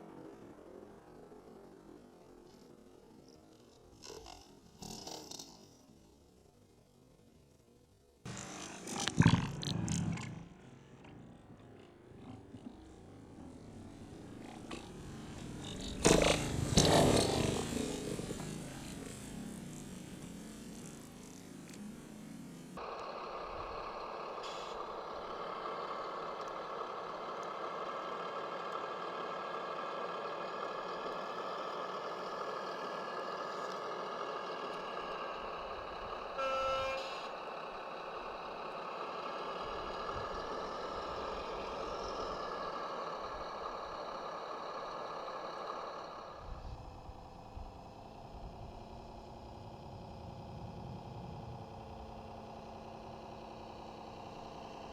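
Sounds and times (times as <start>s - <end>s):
model truck running: 0.0s - 54.9s
horn toot: 36.4s - 37.3s.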